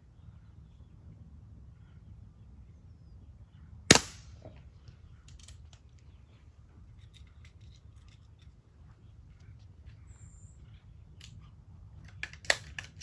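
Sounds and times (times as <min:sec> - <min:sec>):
pellet pistol shot: 0:03.9 - 0:04.5.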